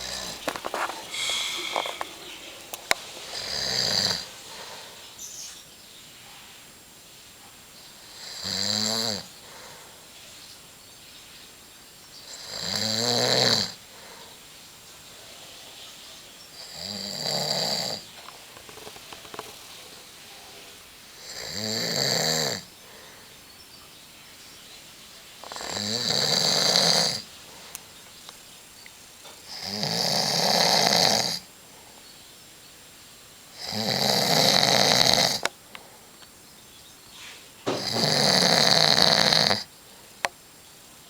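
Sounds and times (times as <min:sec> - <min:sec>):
man snoring: 0:00.0 - 0:02.7, 0:03.3 - 0:04.6, 0:08.2 - 0:09.3, 0:12.3 - 0:13.8, 0:16.7 - 0:18.1, 0:21.2 - 0:22.7, 0:25.5 - 0:27.2, 0:29.5 - 0:31.4, 0:33.6 - 0:35.4, 0:37.7 - 0:39.7
quiet breathing: 0:00.0 - 0:06.8, 0:09.2 - 0:10.6, 0:13.7 - 0:29.6, 0:31.4 - 0:32.4, 0:34.5 - 0:40.4.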